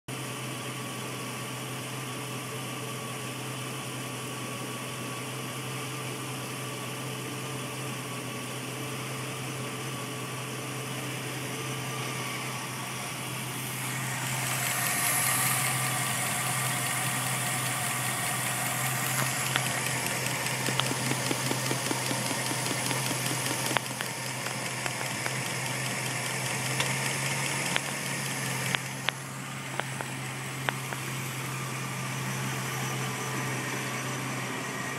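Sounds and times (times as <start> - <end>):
car engine idling rough: 6.2 - 34.9
light irregular ticking: 17.5 - 31.0.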